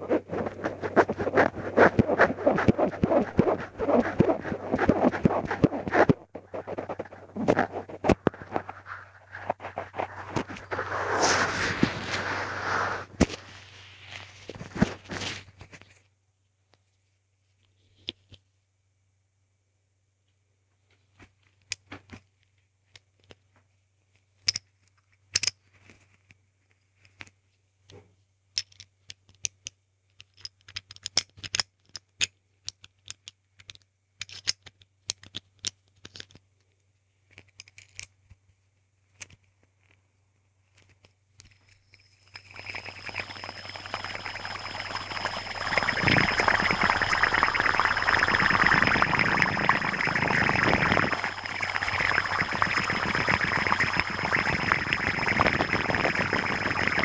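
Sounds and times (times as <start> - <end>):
hand spinner whirring: 0.0 - 13.2, 42.2 - 57.0.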